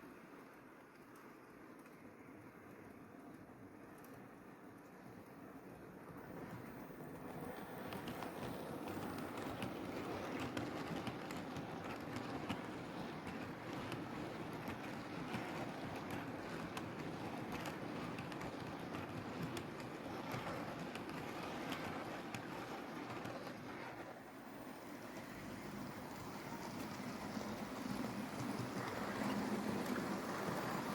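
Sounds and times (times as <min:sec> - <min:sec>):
model train whirring: 0:04.8 - 0:30.9
wheels clicking over rail joints: 0:06.5 - 0:30.9.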